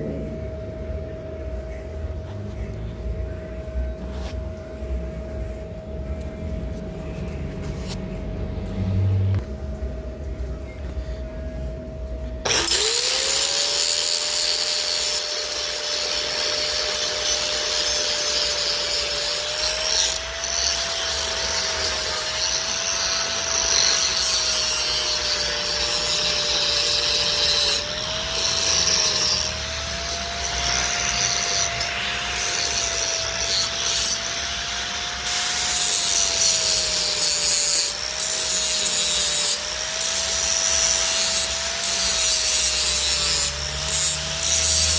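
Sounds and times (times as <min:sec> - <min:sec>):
angle grinder grinding metal: 0:12.4 - 0:44.9.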